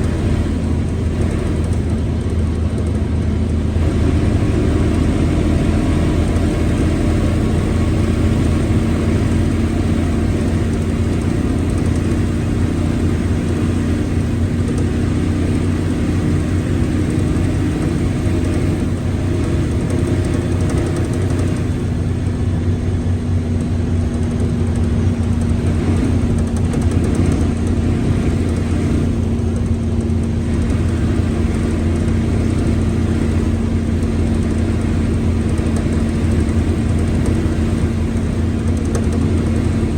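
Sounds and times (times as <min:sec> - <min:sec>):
constant whining tone: 0:00.0 - 0:39.9
diesel bus engine droning: 0:00.0 - 0:39.9
gearbox growling: 0:23.6 - 0:39.9.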